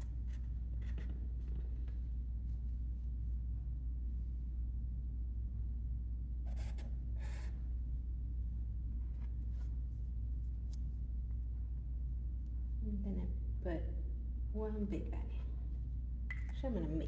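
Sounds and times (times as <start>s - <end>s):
steady low hum: 0.0s - 17.0s
marker scratching on paper: 6.5s - 7.6s.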